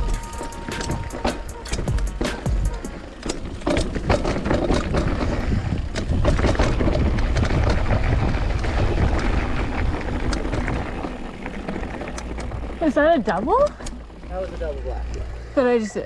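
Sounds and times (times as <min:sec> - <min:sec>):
wind rumble on microphone: 0:02.7 - 0:14.2
bike clattering over rocks: 0:02.9 - 0:13.9.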